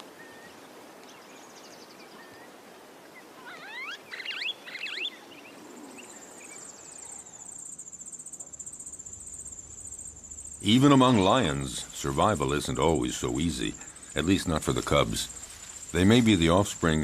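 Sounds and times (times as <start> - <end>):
insects trilling: 0.0 - 17.0
pulsing cricket-like trill: 6.2 - 17.0.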